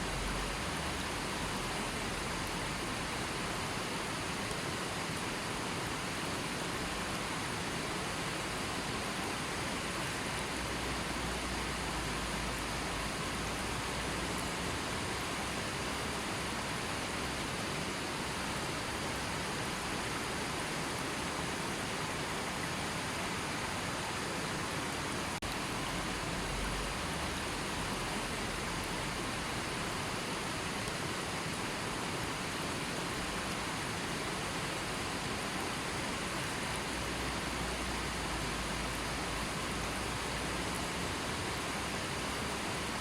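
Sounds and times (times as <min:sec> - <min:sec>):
river flowing: 0:00.0 - 0:43.0.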